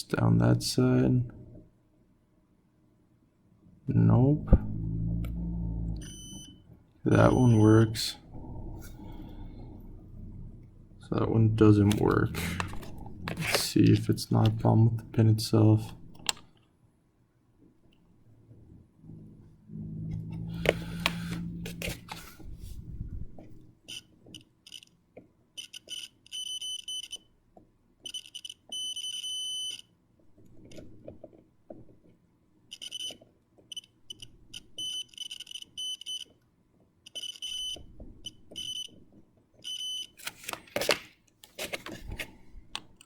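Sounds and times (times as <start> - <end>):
continuity tester beeping: 6.0 - 6.6, 28.1 - 29.8, 34.8 - 36.2, 39.7 - 40.2.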